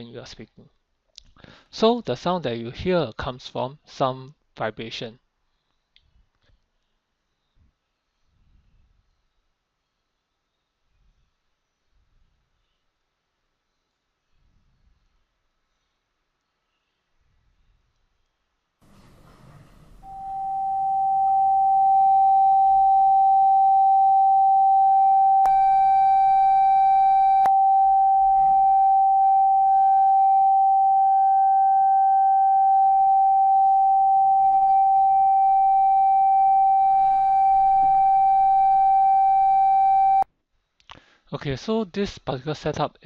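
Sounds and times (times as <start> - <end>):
steady pure tone from loudspeaker: 25.3 - 40.2.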